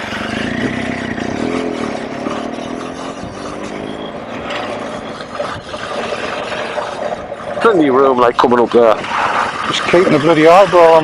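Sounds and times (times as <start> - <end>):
motorcycle engine running: 0.0 - 8.4
wind noise on microphone: 4.8 - 10.7.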